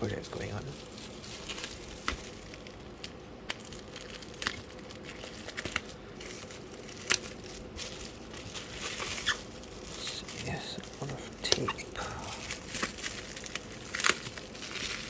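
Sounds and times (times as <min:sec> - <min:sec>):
packing tape tearing: 0:00.4 - 0:15.0.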